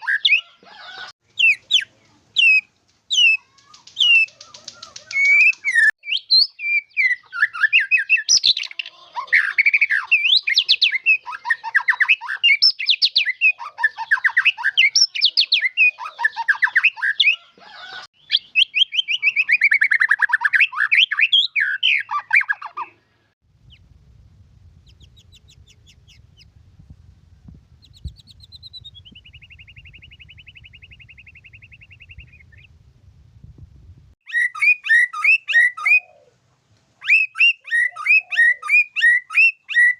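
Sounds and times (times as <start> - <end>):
bird singing whistles and trills: 1.4 - 8.8, 9.4 - 17.4, 18.2 - 22.8, 24.8 - 26.5, 27.8 - 32.7, 34.2 - 36.3, 37.0 - 39.9
low steady hum: 23.5 - 34.2.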